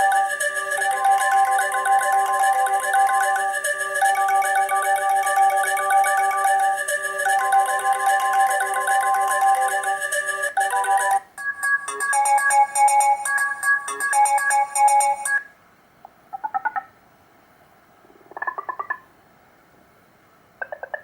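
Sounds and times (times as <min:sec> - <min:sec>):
electronic phone ringtone melody: 0:00.0 - 0:15.5
trilling ringtone bursts: 0:00.0 - 0:15.5.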